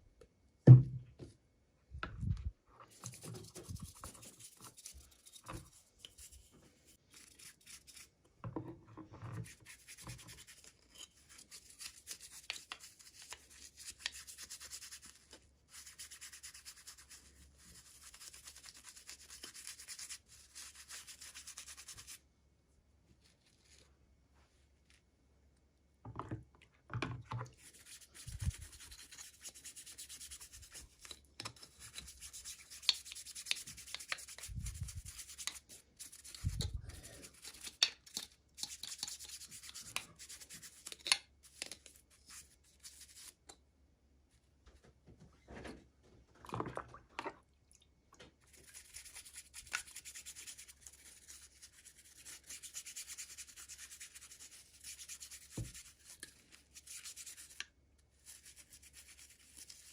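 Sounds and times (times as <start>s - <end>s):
soft thuds: 0.6s - 1.3s.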